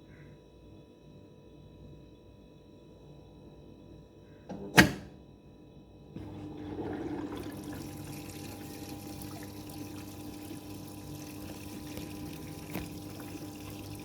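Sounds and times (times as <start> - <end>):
washing machine hum: 4.5 - 5.3, 6.0 - 14.0
water rushing: 6.2 - 14.0.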